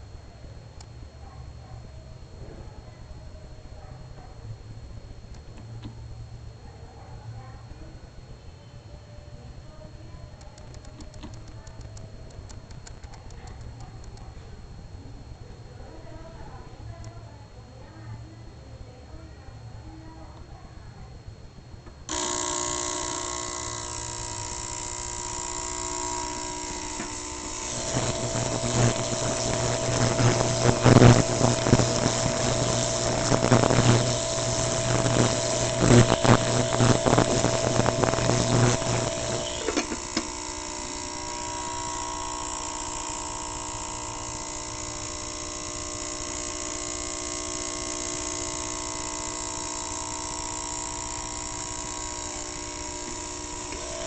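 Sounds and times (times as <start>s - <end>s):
irregular crackling: 10.3s - 14.3s, 24.0s - 53.9s
ultrasonic cleaner humming: 22.0s - 54.0s.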